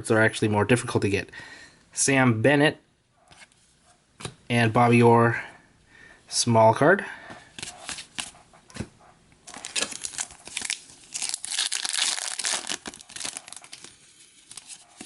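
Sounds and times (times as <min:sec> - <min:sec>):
wrapper crinkling and tearing: 0:09.5 - 0:15.0.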